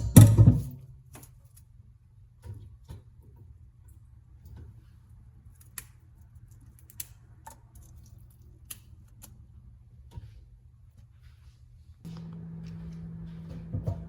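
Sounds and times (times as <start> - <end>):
faint low hum: 7.8 - 14.0.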